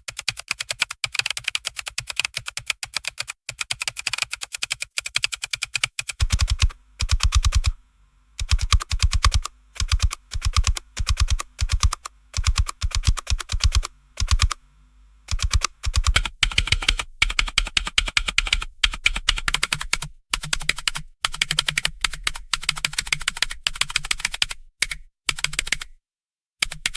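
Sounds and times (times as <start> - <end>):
computer keyboard typing: 0.0 - 7.8, 8.4 - 25.9, 26.6 - 26.9.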